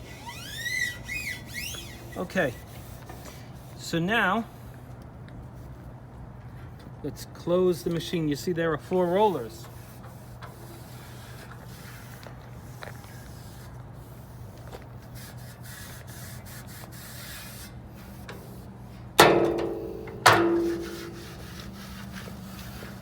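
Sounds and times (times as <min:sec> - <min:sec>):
low steady hum: 0:18.3 - 0:23.0
metal lid clanking shut: 0:19.2 - 0:21.6.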